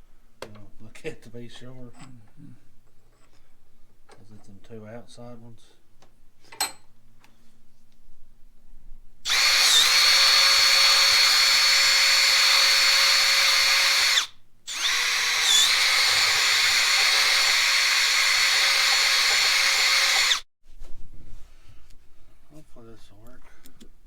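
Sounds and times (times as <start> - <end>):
power drill whining: 9.2 - 20.5.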